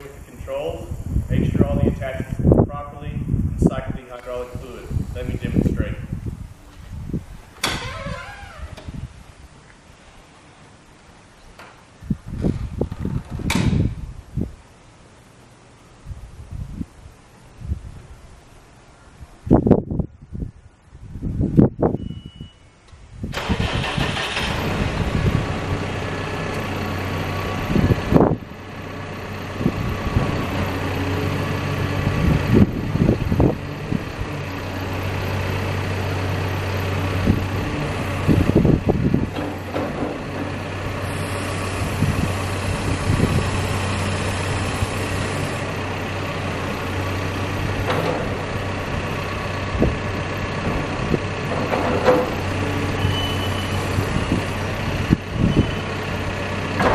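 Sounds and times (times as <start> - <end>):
diesel engine starting and idling: 0.0 - 9.4, 23.2 - 56.9.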